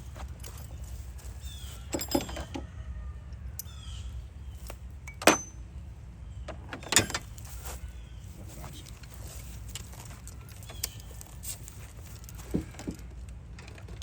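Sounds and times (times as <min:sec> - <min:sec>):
metal tools clinking: 0:00.1 - 0:02.6, 0:05.0 - 0:05.6, 0:06.7 - 0:07.6.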